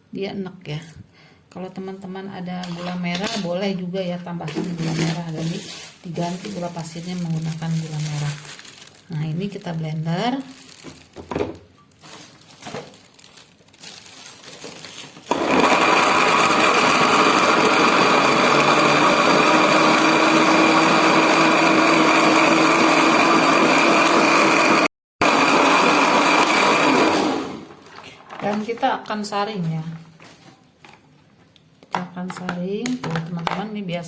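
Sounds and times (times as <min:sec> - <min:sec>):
blender motor whining: 0:15.3 - 0:27.9.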